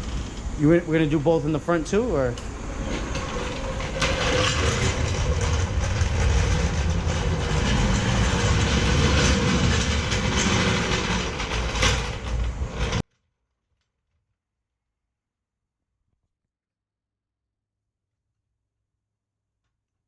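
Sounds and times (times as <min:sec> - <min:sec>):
machine rumbling and rattling: 0:00.0 - 0:13.0.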